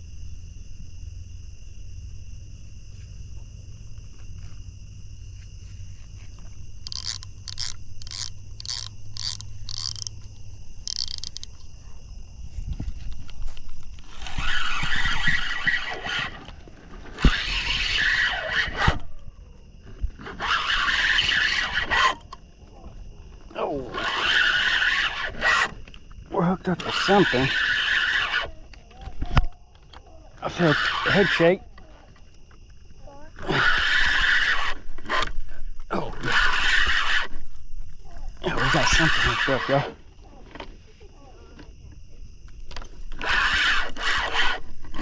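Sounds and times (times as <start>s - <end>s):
night insects chorus: 0.0s - 45.0s
fishing reel clicker buzzing: 6.8s - 11.6s.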